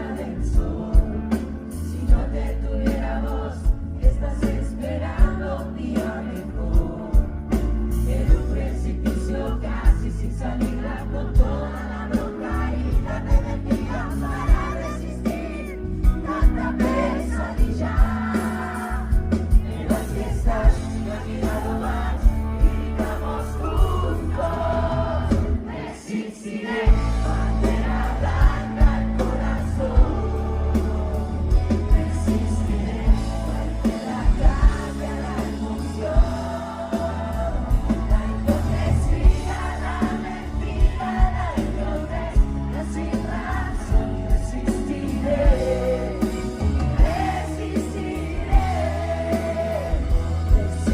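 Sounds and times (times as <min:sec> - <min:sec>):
live pop-rock band: 0:00.0 - 0:50.9
person singing lead vocal: 0:00.0 - 0:50.9.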